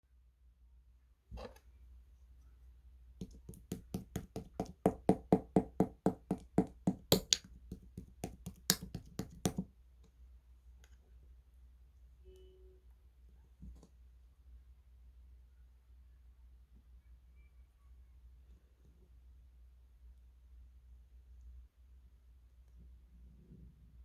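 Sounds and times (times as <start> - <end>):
slime squeezed by hand clicking: 6.2 - 9.6.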